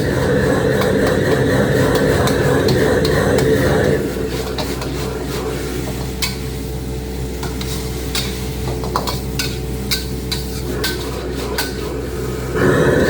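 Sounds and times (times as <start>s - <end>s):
steady low hum: 0.0s - 13.0s
metal spatula scraping a wok: 0.7s - 6.5s, 7.4s - 12.4s
light sizzle: 4.0s - 13.0s.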